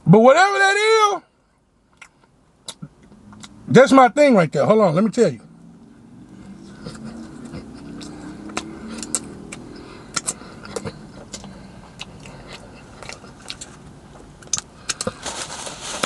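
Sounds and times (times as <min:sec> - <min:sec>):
person chewing with wet smacks: 0:01.9 - 0:03.6, 0:05.8 - 0:15.2.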